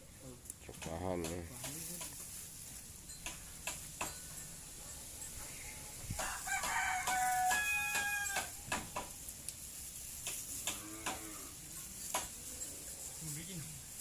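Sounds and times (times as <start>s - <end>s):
rooster crowing: 6.2s - 8.6s.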